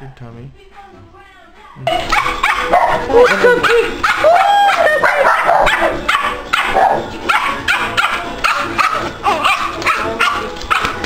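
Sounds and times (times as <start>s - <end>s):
dogs barking and yipping: 1.9s - 11.0s.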